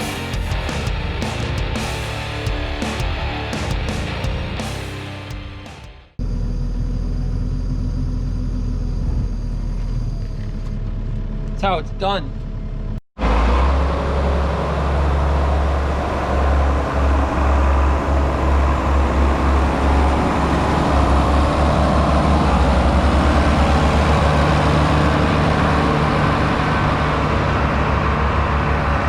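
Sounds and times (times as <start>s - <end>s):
tractor diesel engine running: 14.0s - 29.0s.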